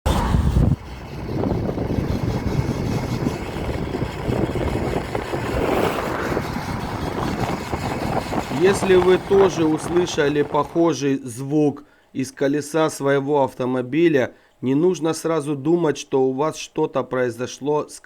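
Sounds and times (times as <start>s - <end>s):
car moving slowly: 0.0s - 10.8s.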